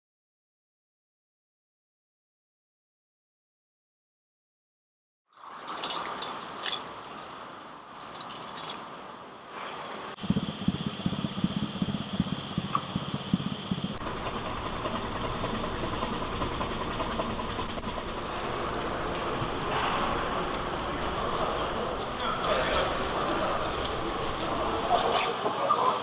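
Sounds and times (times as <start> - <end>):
engines and machinery running: 5.4 - 25.4
pulsing rumble: 10.2 - 25.2.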